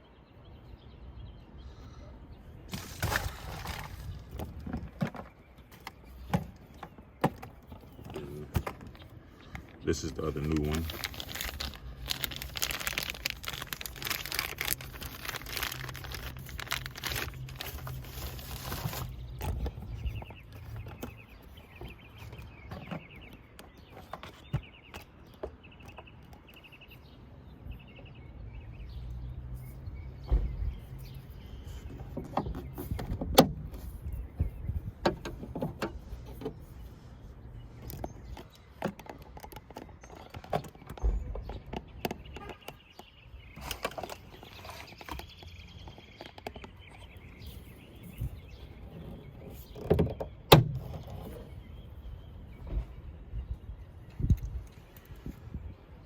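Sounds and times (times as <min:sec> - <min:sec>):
packaging rustling: 0:10.1 - 0:19.5.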